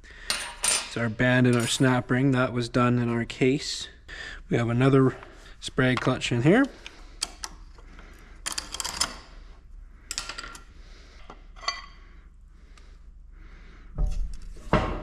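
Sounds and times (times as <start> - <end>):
metal parts clicking and clinking: 8.4 - 9.3, 10.1 - 10.7.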